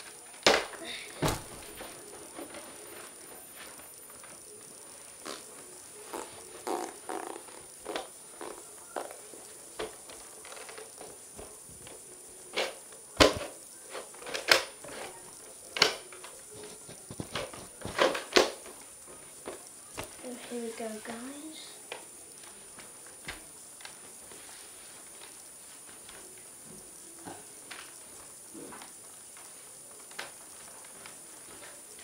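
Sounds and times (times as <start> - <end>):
knocks thuds and rustles: 0.5 - 2.0.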